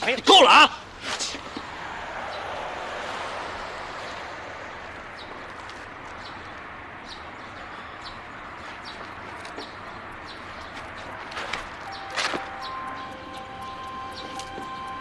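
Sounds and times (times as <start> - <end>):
high bird chirps: 11.8 - 15.0.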